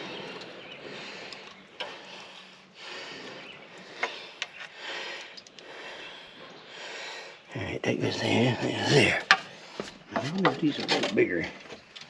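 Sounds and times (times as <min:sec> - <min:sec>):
man breathing heavily: 0:00.8 - 0:07.5.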